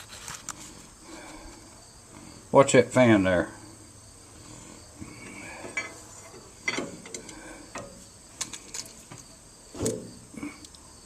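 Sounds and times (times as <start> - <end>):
metal clicks and clunks: 5.2 - 10.8.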